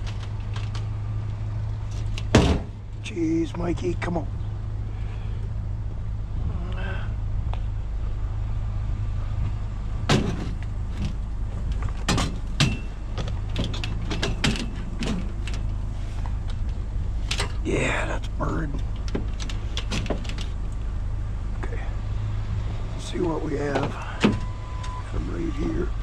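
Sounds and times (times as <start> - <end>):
vehicle engine idling: 0.0 - 26.0
sharp clicks and knocks: 18.2 - 20.8.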